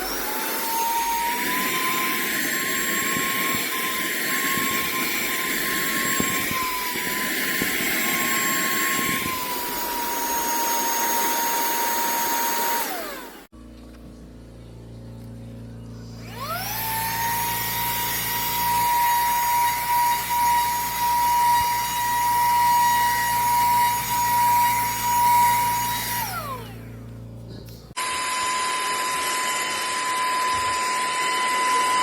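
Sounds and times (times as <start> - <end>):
handheld vacuum motor whine: 0.0 - 32.0.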